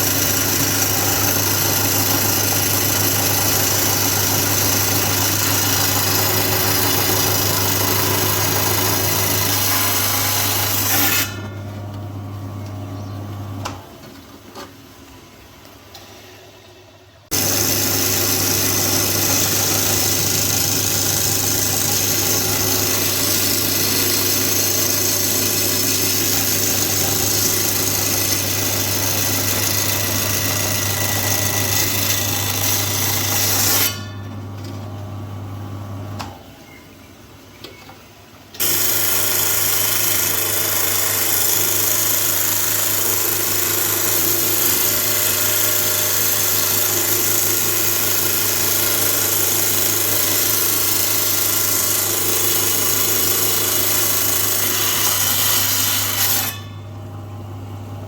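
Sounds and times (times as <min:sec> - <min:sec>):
saw motor hum: 0:00.0 - 0:13.1, 0:17.3 - 0:35.2, 0:38.6 - 0:58.0
rock saw grinding stone: 0:17.3 - 0:34.1.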